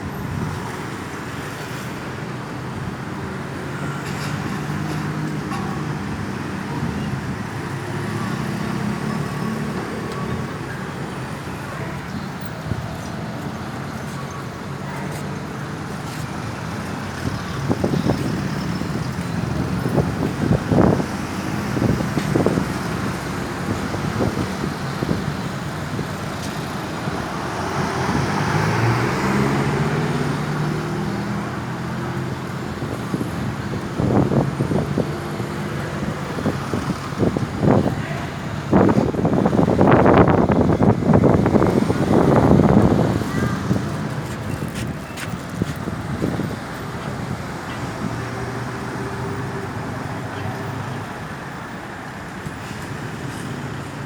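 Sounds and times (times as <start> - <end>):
vehicle engines with road noise: 0.0 - 54.0
vehicle passing and accelerating: 17.8 - 37.9.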